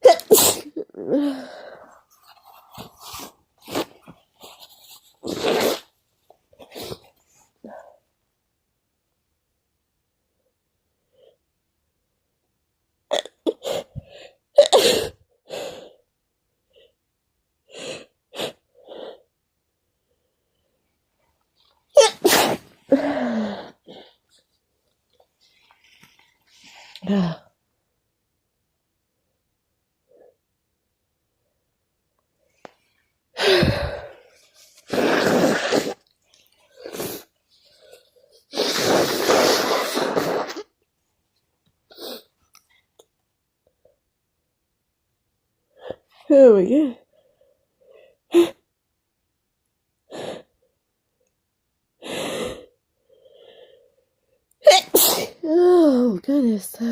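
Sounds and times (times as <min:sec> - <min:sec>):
person sneezing: 0:00.0 - 0:01.5, 0:14.6 - 0:15.2, 0:22.0 - 0:23.8, 0:34.9 - 0:36.0, 0:38.5 - 0:40.7, 0:54.6 - 0:55.6.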